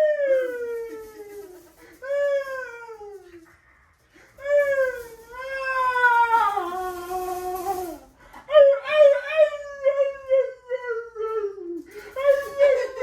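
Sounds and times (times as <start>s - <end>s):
dog whining: 4.4s - 13.0s.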